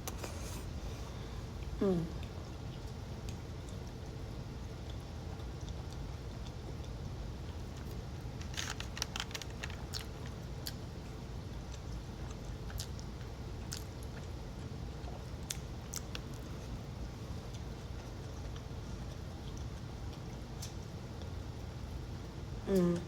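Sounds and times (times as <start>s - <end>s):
steady low hum: 0.0s - 23.0s
person chewing: 7.6s - 10.8s, 11.7s - 14.3s.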